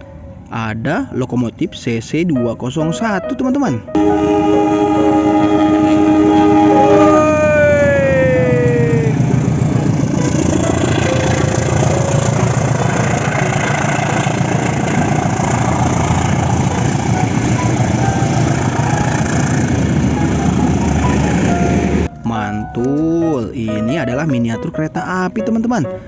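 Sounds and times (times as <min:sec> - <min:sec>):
diesel locomotive engine rumbling: 0:04.0 - 0:22.2.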